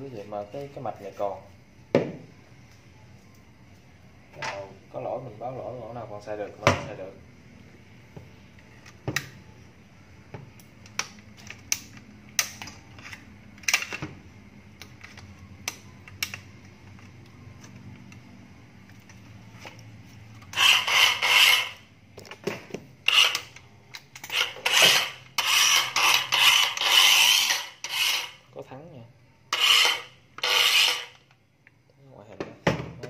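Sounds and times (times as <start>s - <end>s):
cordless saw bursts: 20.5s - 21.8s, 23.1s - 23.5s, 24.3s - 28.4s, 29.5s - 31.2s.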